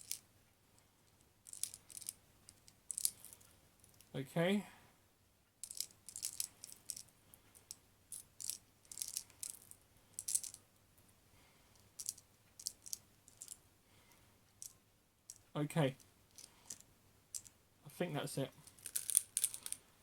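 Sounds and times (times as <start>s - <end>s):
plastic pellets clicking into magazine: 18.7s - 19.8s.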